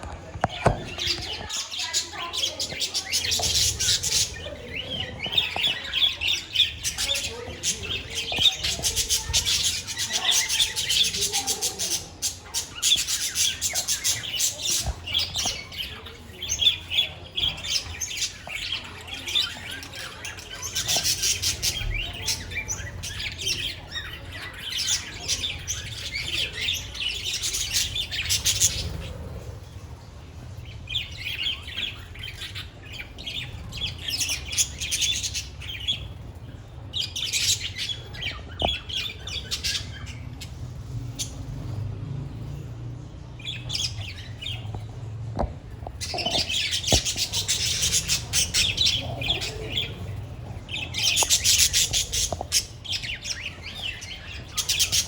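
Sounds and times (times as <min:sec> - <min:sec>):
budgerigars chattering: 0:46.0 - 0:55.0.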